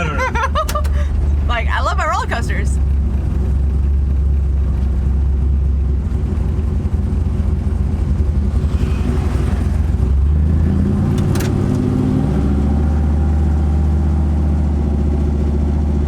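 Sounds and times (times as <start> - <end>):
car engine: 0.0 - 16.0
road noise inside car: 0.0 - 16.0.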